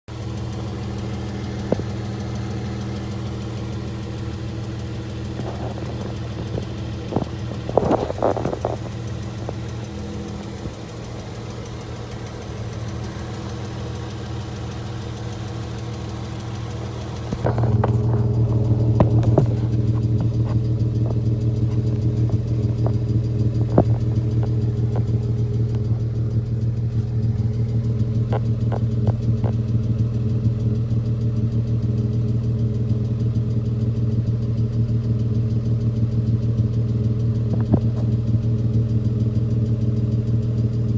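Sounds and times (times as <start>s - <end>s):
car engine idling: 0.0s - 40.9s
brief rattle: 1.2s - 29.8s.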